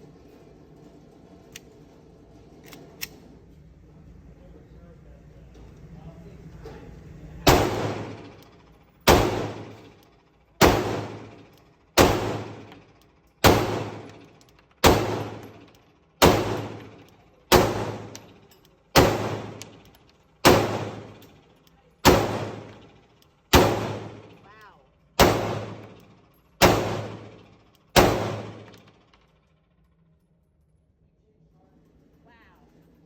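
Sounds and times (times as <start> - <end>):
pistol shots with ringing decay: 7.5 - 10.0, 10.6 - 21.3, 22.0 - 24.4, 25.2 - 28.9.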